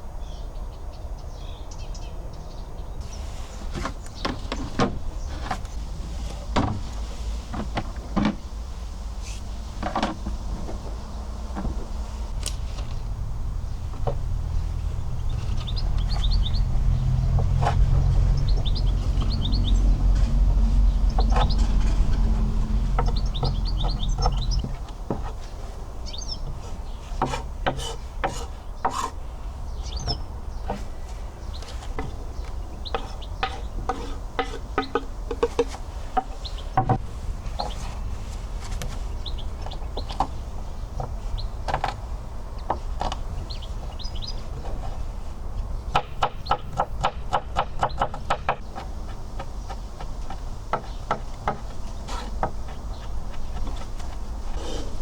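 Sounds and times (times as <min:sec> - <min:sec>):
small birds chirping: 0:00.1 - 0:55.0
handling taps and knocks: 0:03.7 - 0:08.5, 0:09.8 - 0:13.0, 0:21.1 - 0:25.6, 0:26.4 - 0:29.2, 0:30.0 - 0:37.8, 0:39.6 - 0:43.4, 0:45.9 - 0:54.4
low rumble: 0:10.8 - 0:24.6.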